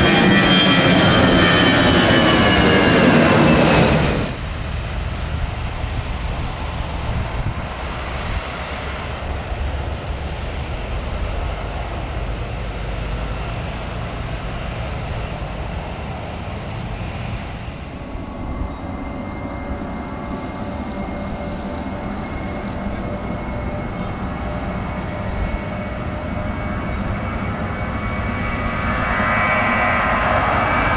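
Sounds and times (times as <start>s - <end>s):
distant jet engines: 0.0s - 30.9s
multi-tone engine whine: 0.0s - 30.9s.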